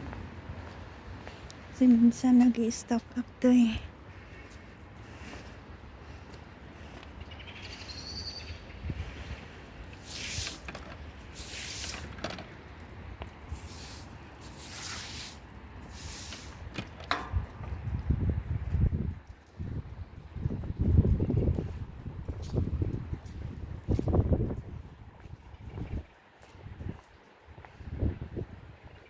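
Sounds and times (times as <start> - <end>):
wind rumbling on microphone: 0.0 - 29.0
short hissing bursts: 9.9 - 12.1, 13.5 - 16.7.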